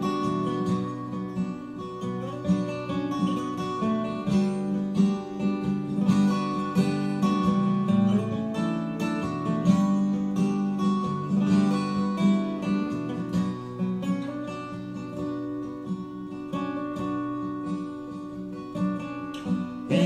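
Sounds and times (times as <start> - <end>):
acoustic guitar strumming chords: 0.0 - 20.0.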